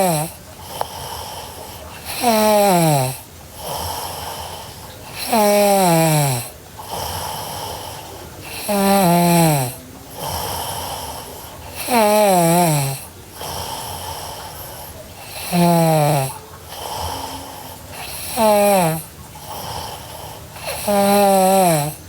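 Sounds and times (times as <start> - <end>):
girl snoring: 0.0 - 22.0
breathy rush of air: 16.3 - 18.0.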